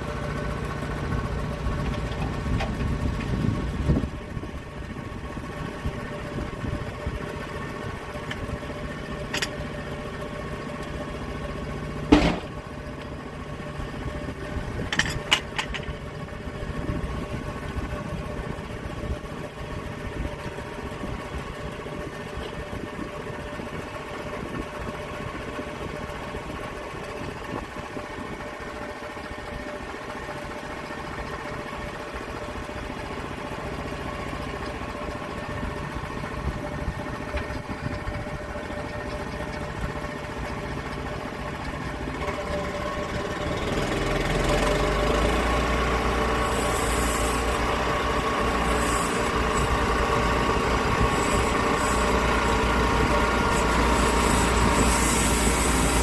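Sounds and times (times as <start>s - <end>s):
sawmill engine running: 0.0s - 56.0s
sharp knocks and clicks: 12.1s - 12.5s.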